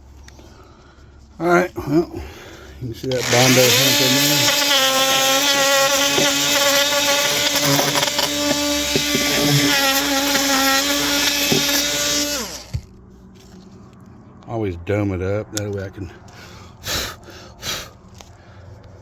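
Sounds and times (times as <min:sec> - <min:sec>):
electric power tool running: 0:03.1 - 0:12.9
power tool spinning down: 0:03.1 - 0:12.9.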